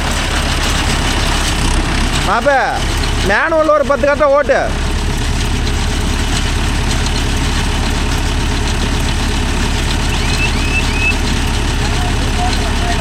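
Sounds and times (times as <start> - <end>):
tractor diesel engine running: 0.0 - 13.0.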